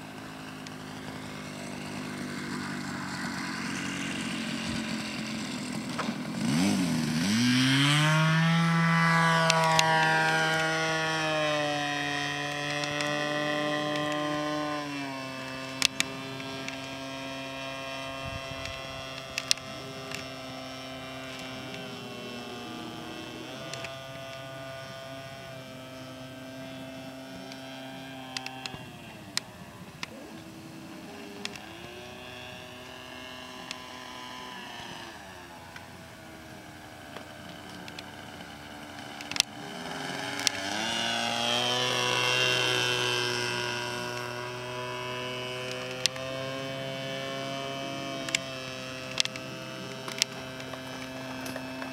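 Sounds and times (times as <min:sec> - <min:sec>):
model plane engine: 0:00.0 - 0:51.9
sharp clicks: 0:31.2 - 0:31.9, 0:37.1 - 0:40.7, 0:48.2 - 0:51.9.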